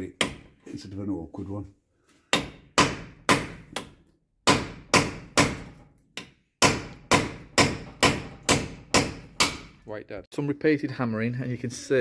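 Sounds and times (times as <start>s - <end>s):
hammer striking metal: 2.3s - 9.8s.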